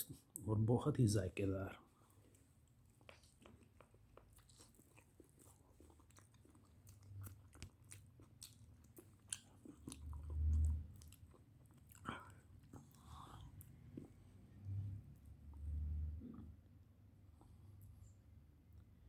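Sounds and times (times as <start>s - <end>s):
person chewing crunchy food: 2.0s - 14.7s.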